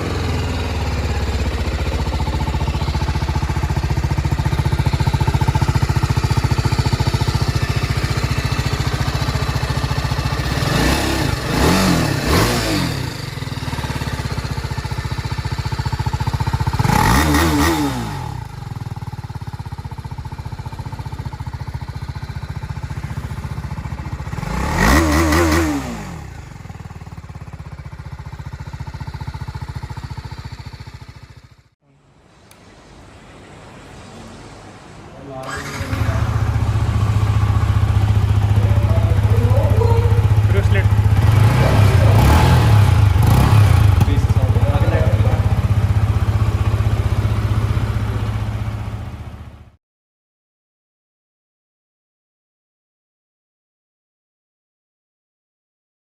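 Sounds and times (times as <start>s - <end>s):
motorcycle exhaust idling: 0.0s - 31.8s, 35.6s - 49.8s
motorcycle throttle blips: 35.4s - 49.5s.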